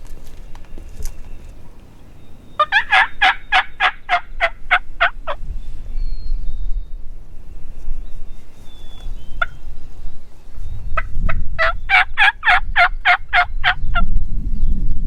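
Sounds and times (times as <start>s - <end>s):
turkey gobbling: 2.6s - 5.4s, 9.4s - 9.6s, 11.0s - 13.8s.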